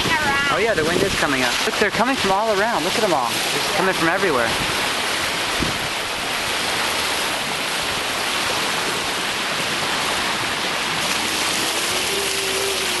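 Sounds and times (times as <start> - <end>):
water rushing along boat hull: 0.0 - 13.0.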